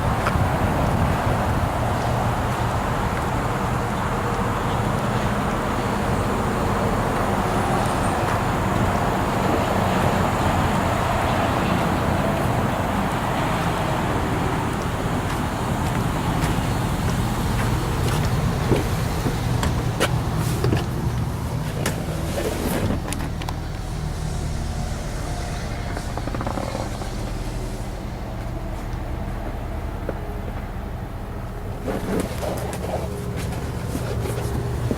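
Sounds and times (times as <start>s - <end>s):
vehicle engine idling: 0.0s - 34.9s.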